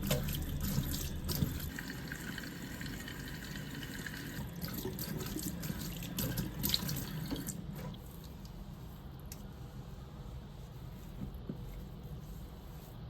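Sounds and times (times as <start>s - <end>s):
tap water running into sink: 0.0s - 7.6s.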